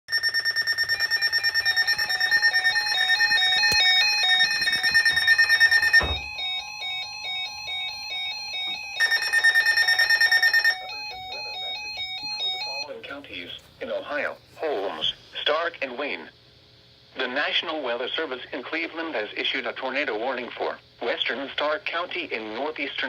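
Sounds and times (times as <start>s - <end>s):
steady warning alarm tone: 0.1s - 13.7s
weather radio high beeping: 0.1s - 13.7s.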